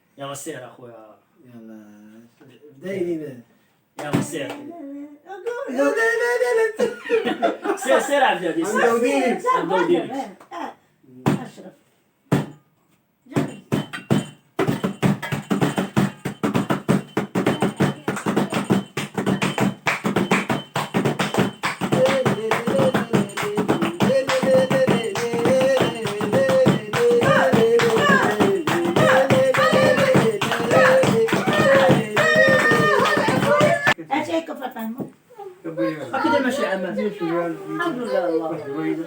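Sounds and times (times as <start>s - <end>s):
folk percussion beat: 4.0s - 4.6s, 12.3s - 12.6s, 13.3s - 34.0s
person singing: 21.9s - 34.0s.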